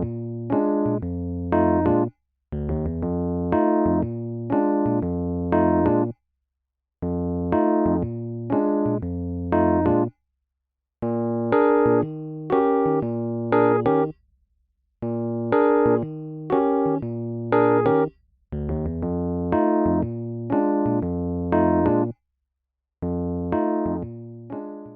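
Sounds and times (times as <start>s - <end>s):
electric piano music: 0.0s - 2.1s, 3.5s - 6.1s, 7.5s - 10.1s, 11.4s - 14.1s, 15.4s - 18.1s, 19.4s - 22.1s, 23.5s - 24.9s.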